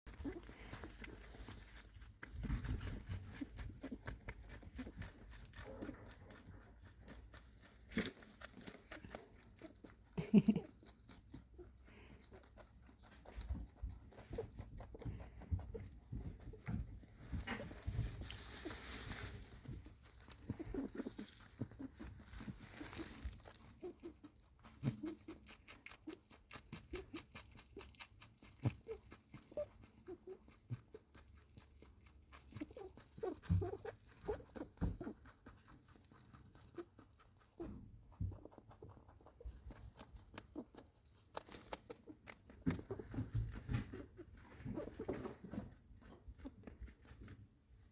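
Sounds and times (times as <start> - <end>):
rabbit clicks and patter: 0.1 - 47.9
rabbit low squeaks: 11.3 - 27.9, 32.4 - 47.9.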